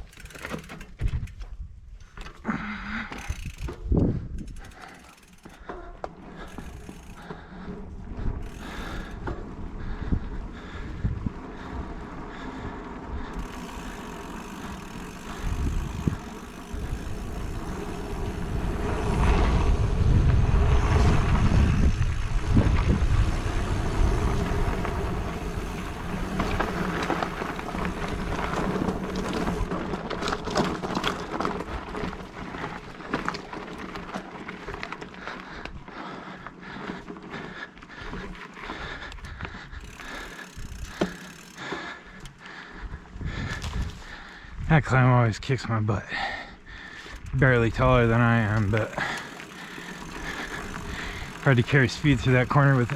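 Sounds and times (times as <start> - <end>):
bike rattling and clicking: 0.0 - 52.9
wind on microphone: 15.3 - 26.8.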